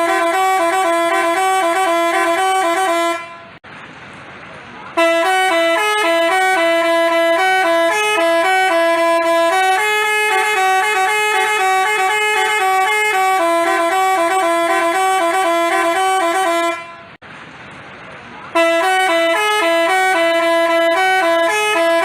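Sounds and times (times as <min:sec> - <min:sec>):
musical bus horn playing a tune: 0:00.0 - 0:03.6, 0:05.0 - 0:17.2, 0:18.5 - 0:22.0.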